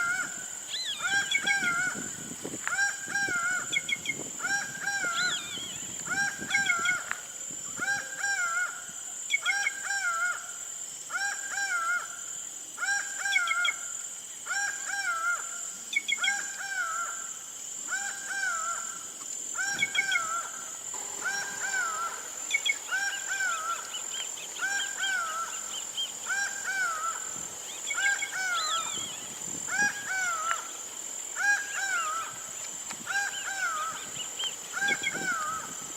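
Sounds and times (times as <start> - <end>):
steady high-pitched drone: 19.6 - 35.9.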